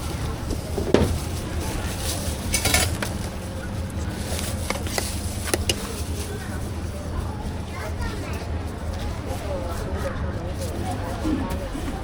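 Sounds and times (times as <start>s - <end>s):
utensils and containers clinking: 0.6s - 6.8s.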